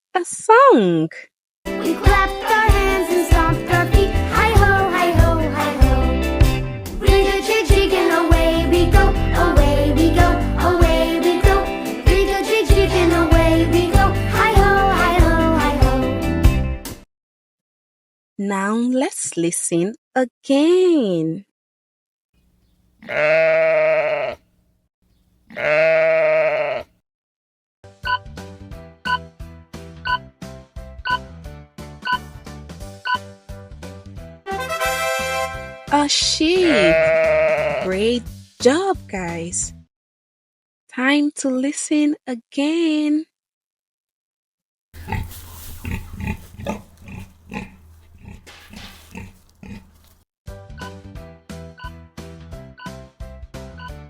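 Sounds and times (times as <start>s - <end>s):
sheep bleating: 23.0s - 24.5s, 25.5s - 26.9s, 36.5s - 37.9s, 45.0s - 50.2s
pig grunting: 45.0s - 50.2s.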